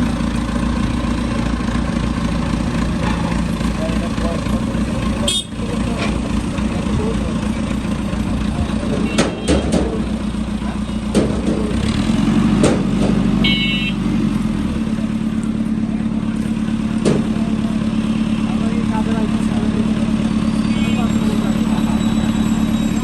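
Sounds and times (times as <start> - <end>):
heavy machine engine running: 0.0 - 23.0
high squeak: 20.4 - 23.0.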